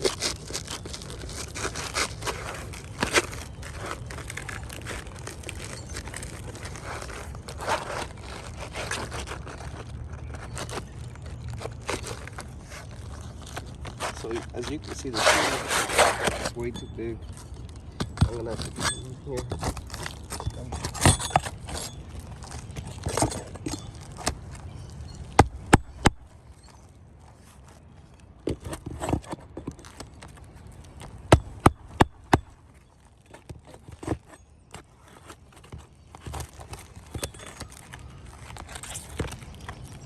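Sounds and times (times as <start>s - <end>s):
shingle rustling and scraping: 0.0s - 40.0s.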